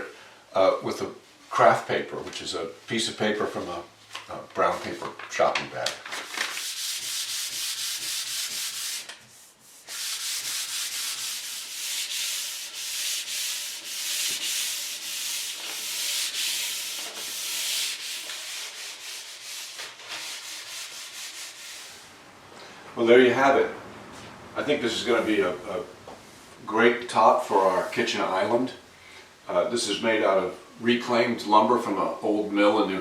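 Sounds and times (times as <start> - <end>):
paper bag rubbing on wood: 6.4 - 22.0.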